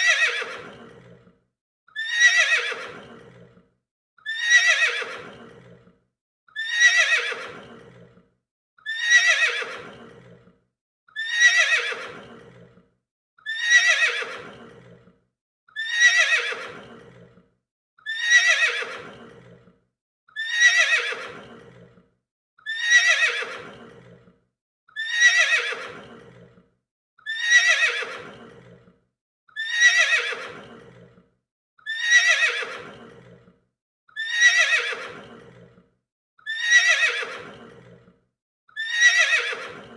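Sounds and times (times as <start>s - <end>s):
horse neighing: 0.0s - 1.2s, 2.0s - 3.5s, 4.3s - 5.8s, 6.6s - 8.1s, 8.9s - 10.4s, 11.2s - 12.7s, 13.5s - 15.0s, 15.8s - 17.2s, 18.1s - 19.6s, 20.4s - 21.8s, 22.7s - 24.2s, 25.0s - 26.5s, 27.3s - 28.8s, 29.6s - 31.1s, 31.9s - 33.3s, 34.2s - 35.7s, 36.5s - 37.9s, 38.8s - 39.9s.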